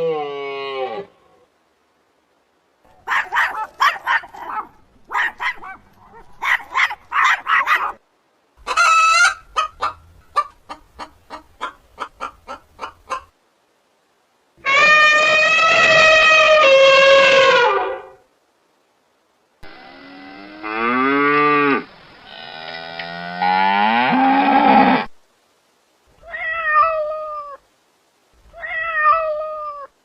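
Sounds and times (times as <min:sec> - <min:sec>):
fowl harsh calls: 0:03.0 - 0:05.8, 0:14.6 - 0:18.1
fowl clucking: 0:08.6 - 0:13.3.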